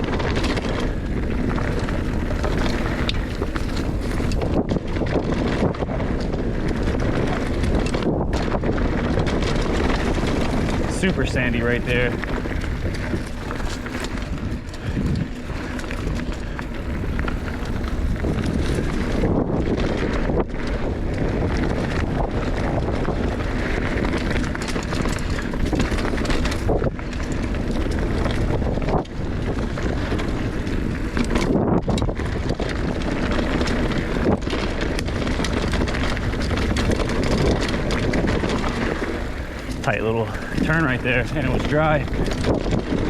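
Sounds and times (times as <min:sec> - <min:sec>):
bike tyres rolling on dirt: 0:00.0 - 0:43.0
wind rush on microphone: 0:00.0 - 0:43.0
bike knocking over bumps: 0:08.0 - 0:18.8, 0:24.0 - 0:26.8.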